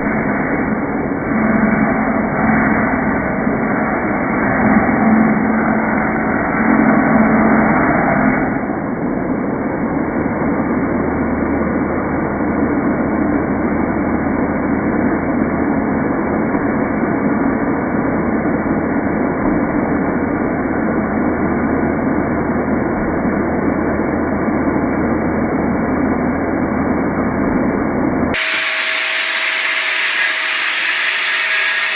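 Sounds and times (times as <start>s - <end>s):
muffled power tool running: 28.4s - 31.9s
power tool whine: 28.4s - 31.9s.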